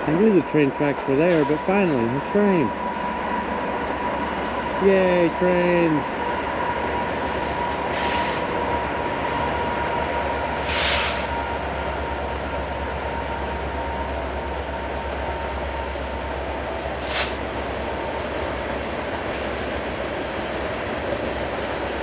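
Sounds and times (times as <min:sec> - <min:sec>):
train rolling rumble: 0:00.0 - 0:22.0
short hissing surges: 0:10.6 - 0:11.3.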